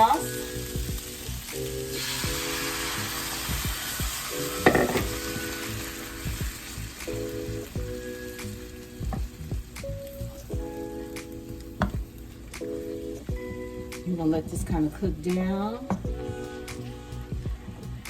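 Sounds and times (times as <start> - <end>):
vegetables sizzling in a frying pan: 0.0 - 17.2.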